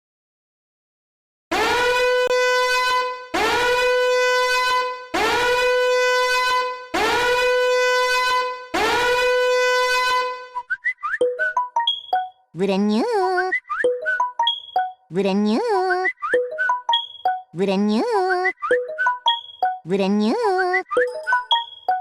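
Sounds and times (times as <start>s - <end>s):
horn-like sound effect blasts: 1.5s - 10.6s.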